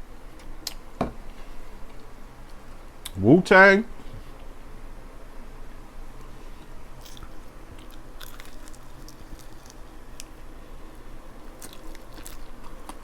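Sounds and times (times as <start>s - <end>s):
wet chewing mouth sounds: 6.9s - 13.0s.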